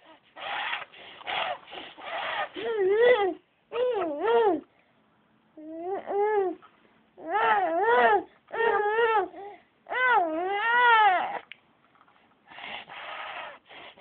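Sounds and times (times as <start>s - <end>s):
baby fussing with whiny cries: 0.0s - 4.6s, 7.2s - 11.4s.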